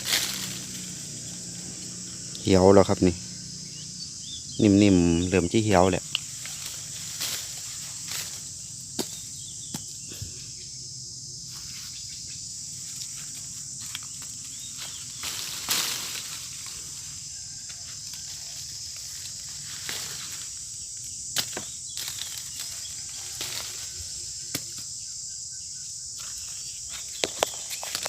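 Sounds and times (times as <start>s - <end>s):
high-pitched insect chorus: 0.0s - 28.0s.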